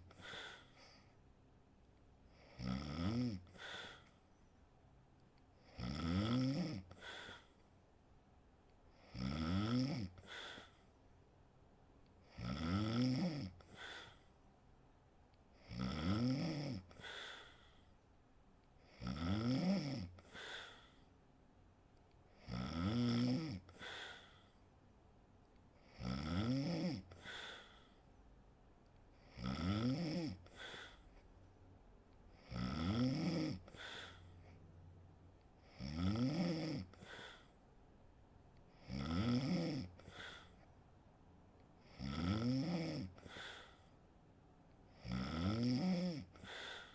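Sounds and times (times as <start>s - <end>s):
quiet breath: 0.0s - 2.7s, 3.3s - 4.8s, 6.6s - 8.0s, 10.0s - 11.2s, 13.4s - 14.7s, 16.5s - 19.1s, 20.0s - 21.4s, 23.5s - 25.0s, 27.0s - 29.4s, 30.3s - 32.7s, 33.4s - 35.9s, 36.8s - 37.8s, 39.8s - 40.9s, 42.9s - 45.2s, 46.0s - 46.9s
woman snoring: 2.4s - 4.1s, 5.7s - 7.5s, 9.0s - 10.7s, 12.3s - 14.2s, 15.6s - 17.6s, 18.9s - 20.9s, 22.4s - 24.4s, 25.8s - 27.8s, 29.2s - 31.0s, 32.4s - 34.3s, 35.6s - 37.5s, 38.8s - 40.6s, 41.8s - 43.8s, 44.9s - 46.9s.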